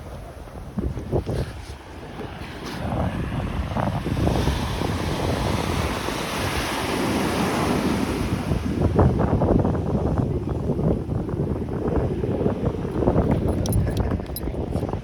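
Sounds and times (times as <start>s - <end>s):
wind rumbling on microphone: 0.0s - 15.0s
ocean wave breaking: 1.5s - 9.0s.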